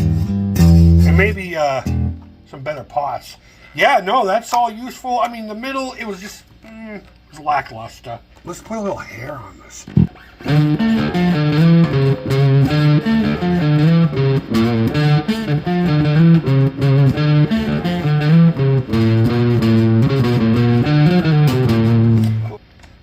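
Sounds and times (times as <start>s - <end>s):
distorted electric bass riff: 0.0s - 2.4s, 9.9s - 22.7s.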